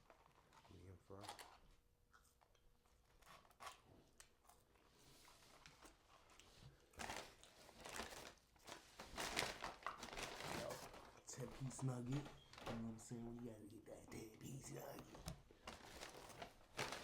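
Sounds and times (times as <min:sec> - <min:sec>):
paper packaging crinkling: 0:05.3 - 0:13.5, 0:14.4 - 0:17.0.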